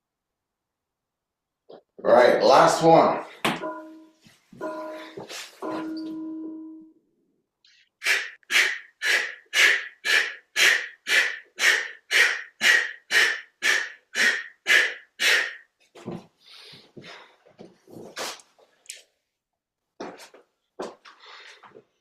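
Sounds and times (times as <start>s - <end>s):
person exhaling sharply: 8.0s - 15.6s.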